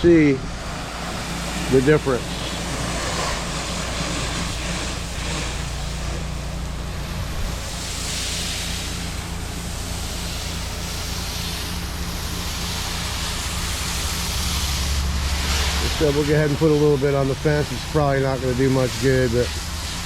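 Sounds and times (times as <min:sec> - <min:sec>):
pressure washer engine hum: 0:00.0 - 0:20.0
spray wand hissing: 0:01.4 - 0:20.0.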